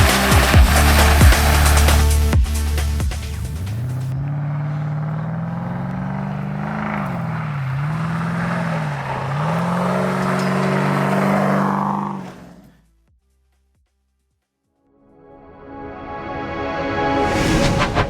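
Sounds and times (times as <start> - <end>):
car engine accelerating: 0.0 - 12.9.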